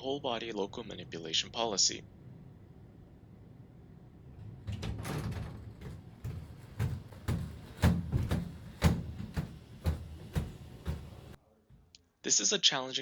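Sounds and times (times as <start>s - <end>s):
robot thuds and clacks: 4.4s - 11.9s.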